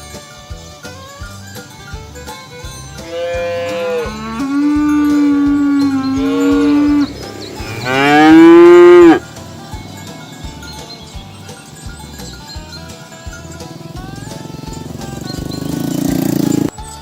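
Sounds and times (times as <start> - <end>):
cattle mooing: 3.0 - 9.2.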